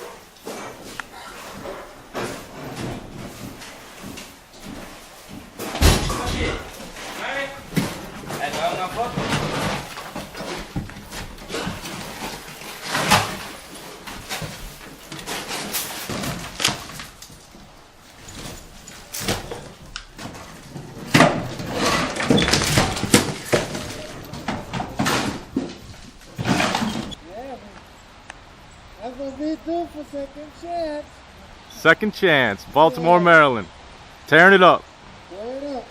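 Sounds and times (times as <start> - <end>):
demolition bangs and thuds: 0.0 - 27.2.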